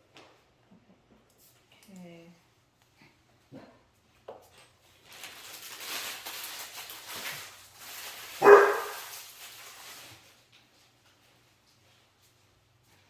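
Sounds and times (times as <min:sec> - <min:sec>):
hissy rustling: 0:07.2 - 0:10.2
dog barking: 0:08.4 - 0:09.1.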